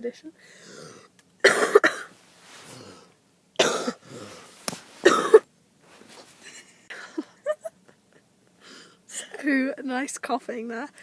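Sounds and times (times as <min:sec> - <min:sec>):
woman coughing: 0:01.4 - 0:02.1, 0:03.6 - 0:04.2, 0:05.0 - 0:05.4
faint throat sounds: 0:02.6 - 0:04.5.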